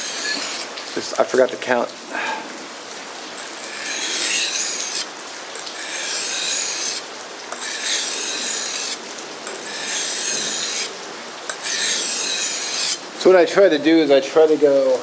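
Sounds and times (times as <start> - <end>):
knife rasping on sharpening stone: 0.0 - 0.7, 3.4 - 10.9, 11.5 - 13.0.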